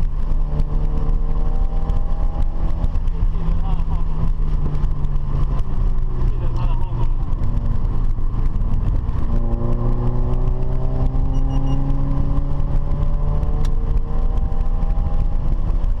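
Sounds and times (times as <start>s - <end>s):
car engine accelerating: 0.0s - 16.0s
gear change click: 4.2s - 16.0s.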